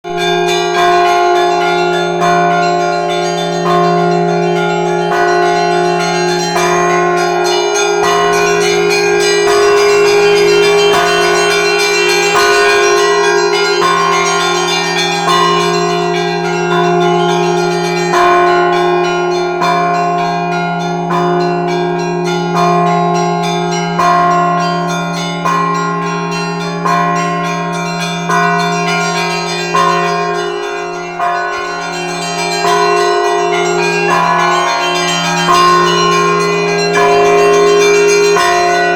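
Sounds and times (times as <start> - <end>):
large bells humming: 0.0 - 38.9
small bells ringing quick patterns: 2.3 - 16.0.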